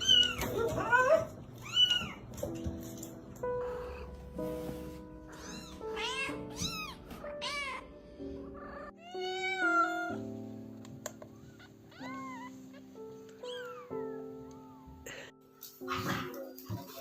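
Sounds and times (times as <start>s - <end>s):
background music: 0.0s - 17.0s
cat meowing: 5.4s - 7.9s, 8.6s - 10.2s, 11.4s - 14.1s.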